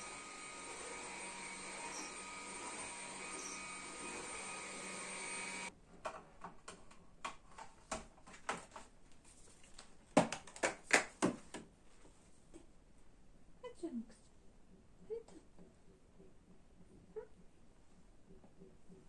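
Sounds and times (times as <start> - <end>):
appliance whirring: 0.0 - 5.7.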